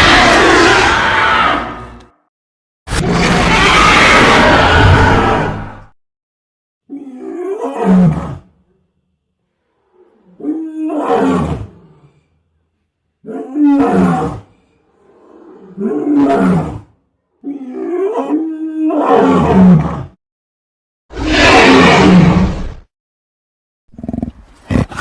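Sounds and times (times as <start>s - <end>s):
monster roaring: 0.0s - 1.8s, 2.9s - 5.9s, 21.1s - 22.6s.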